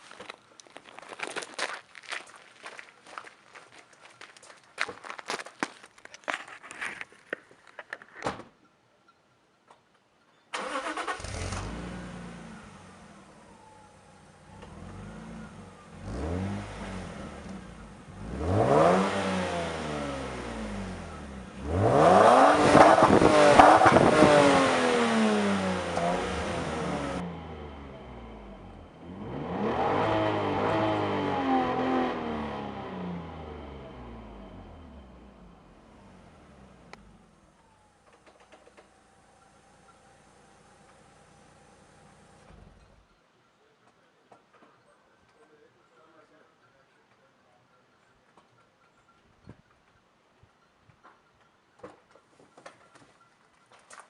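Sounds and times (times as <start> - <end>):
car engine revving: 10.6 - 37.8.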